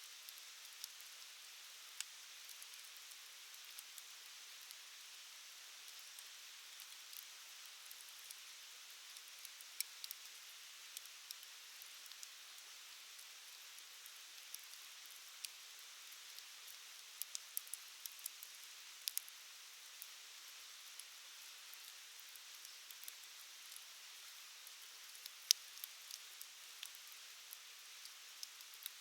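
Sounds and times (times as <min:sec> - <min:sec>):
campfire crackling and popping: 0:17.2 - 0:19.3.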